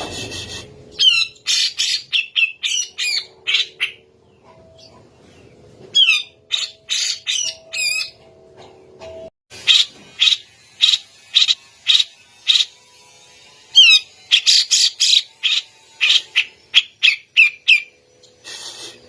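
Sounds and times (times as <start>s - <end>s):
bird rasping calls: 13.7s - 18.0s.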